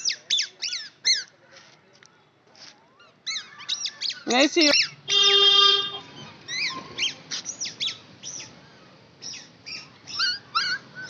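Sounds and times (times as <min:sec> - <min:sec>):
bird chirping: 0:06.2 - 0:11.0.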